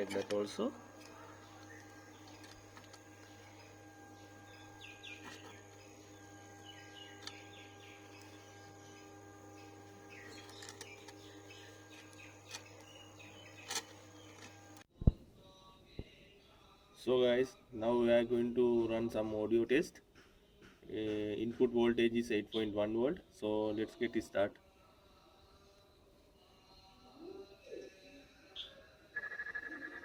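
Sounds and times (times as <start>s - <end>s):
faint chirping: 0.0s - 14.8s
steady low hum: 0.0s - 14.9s.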